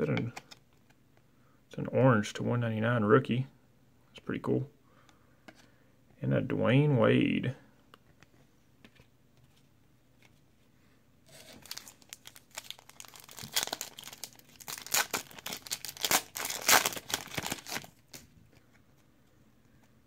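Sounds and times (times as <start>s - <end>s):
plastic wrapper tearing and crinkling: 11.3s - 18.3s.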